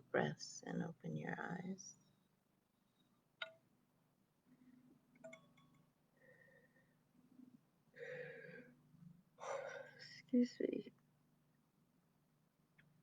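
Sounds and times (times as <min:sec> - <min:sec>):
soft deep breath: 0:06.1 - 0:07.1, 0:07.9 - 0:08.8.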